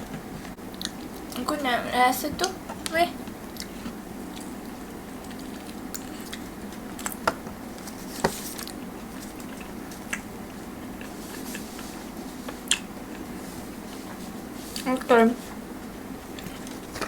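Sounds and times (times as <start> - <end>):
steady low hum: 0.0 - 17.0
soft chewing: 0.7 - 1.4, 3.4 - 7.2, 7.8 - 15.6, 16.2 - 17.0.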